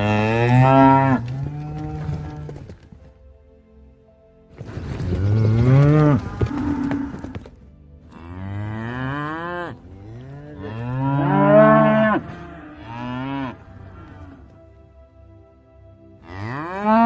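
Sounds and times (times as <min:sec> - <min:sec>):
cattle mooing: 0:00.0 - 0:02.6, 0:05.0 - 0:07.5, 0:08.1 - 0:14.6, 0:16.2 - 0:17.0.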